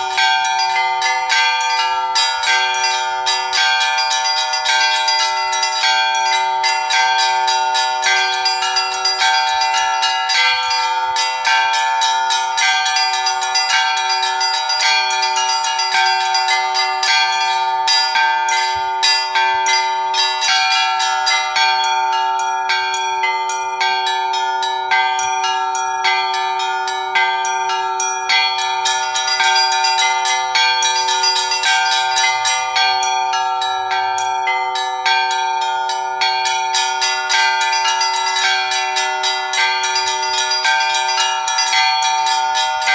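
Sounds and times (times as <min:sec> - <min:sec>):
hum of large bells: 0:00.0 - 0:42.9
small bells ringing quickly: 0:00.0 - 0:42.9.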